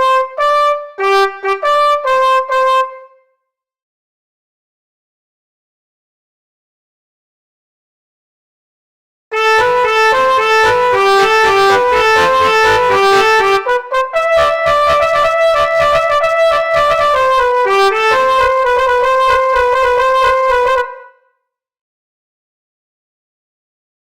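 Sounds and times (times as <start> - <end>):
brassy horn melody: 0.0 - 3.2, 9.4 - 21.2.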